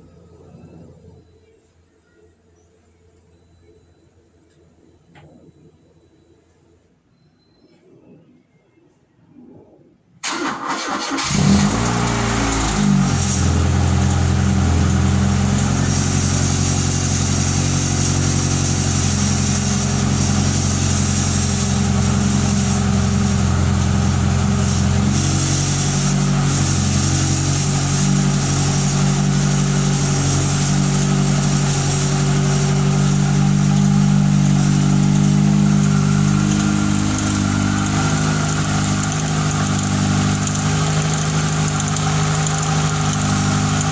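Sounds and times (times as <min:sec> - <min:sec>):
car engine cranking and idling: 0:10.2 - 0:43.9
loud exhaust: 0:10.2 - 0:43.9.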